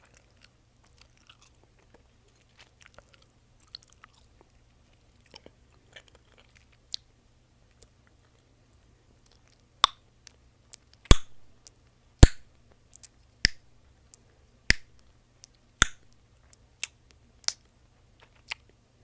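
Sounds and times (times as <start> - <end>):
wet mouth clicks: 11.1 - 11.4, 14.7 - 16.1
chewing gum popping: 14.7 - 17.6.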